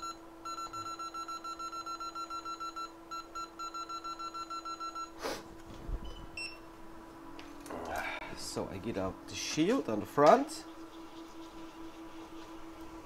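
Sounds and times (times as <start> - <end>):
short electronic beeps: 0.0 - 5.2
steady hum: 0.0 - 13.0.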